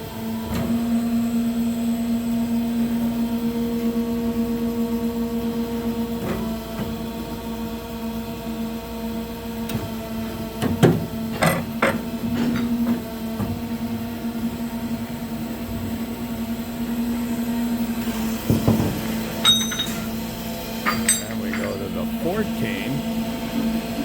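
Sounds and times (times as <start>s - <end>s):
bandsaw machine humming: 19.1s - 24.0s
sharp metallic clanks: 20.8s - 22.0s.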